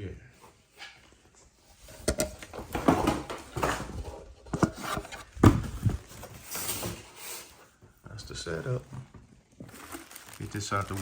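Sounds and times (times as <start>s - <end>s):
packaging knocks and scrapes: 1.9s - 7.6s, 8.8s - 11.0s.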